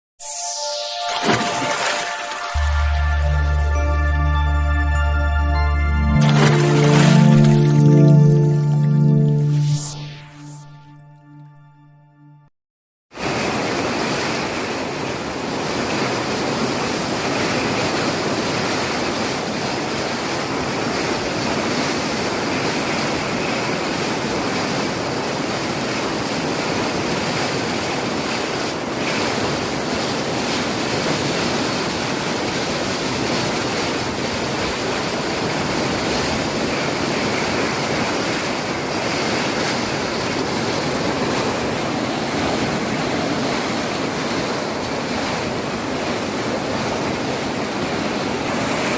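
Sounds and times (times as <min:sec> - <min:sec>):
floodwater rushing: 0:00.4 - 0:10.8, 0:13.2 - 0:48.9.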